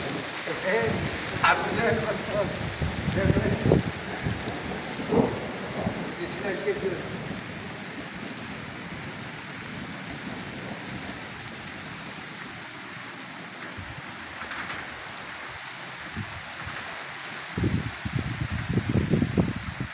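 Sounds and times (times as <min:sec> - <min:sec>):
heavy rain falling: 0:00.0 - 0:19.9
irregular low thumps: 0:02.1 - 0:06.0.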